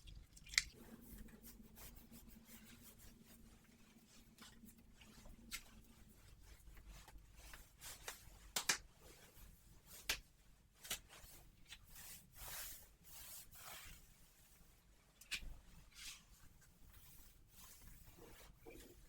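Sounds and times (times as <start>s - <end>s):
soft clicks and snaps: 0.4s - 0.8s, 8.0s - 8.9s
rustling and rubbing: 0.8s - 19.0s.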